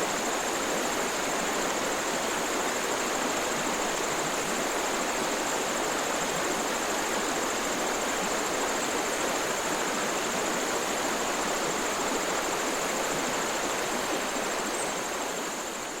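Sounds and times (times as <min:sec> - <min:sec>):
rushing water: 0:00.0 - 0:16.0.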